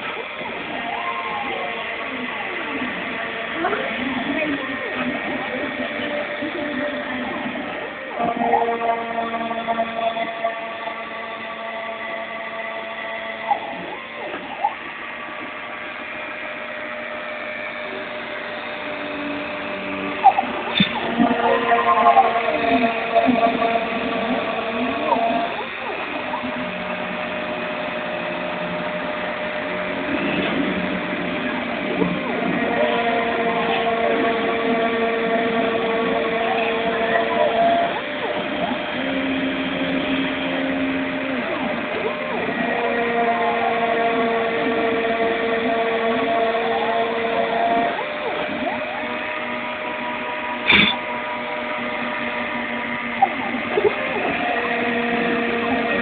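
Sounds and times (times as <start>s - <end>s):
machine mechanical hum: 0.0s - 56.0s
motor whine: 0.0s - 56.0s.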